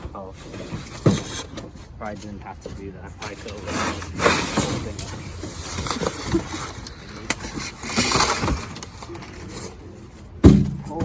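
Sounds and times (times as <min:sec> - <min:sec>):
cardboard rustling and scraping: 0:00.0 - 0:11.0
loud thump: 0:10.4 - 0:11.0.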